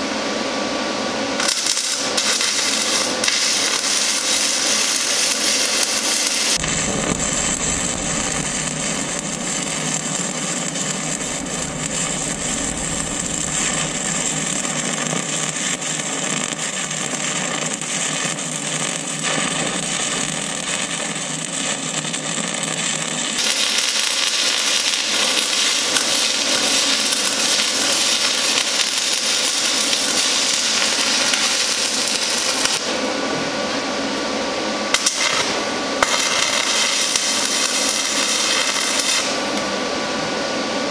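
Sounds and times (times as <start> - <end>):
welding arc crackling and hissing: 1.4 - 40.0.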